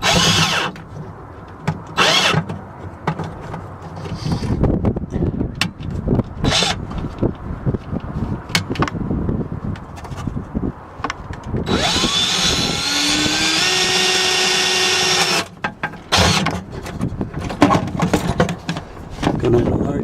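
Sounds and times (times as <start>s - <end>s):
electric drill whine: 0.0s - 0.7s, 2.0s - 2.4s, 11.7s - 15.5s
handling clicks and knocks: 0.2s - 4.6s, 5.6s - 9.0s, 15.5s - 19.6s.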